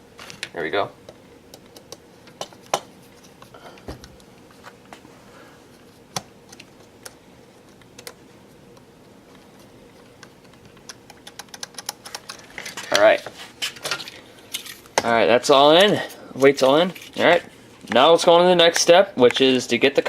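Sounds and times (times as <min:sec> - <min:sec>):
small model parts clicking: 0:10.4 - 0:12.4.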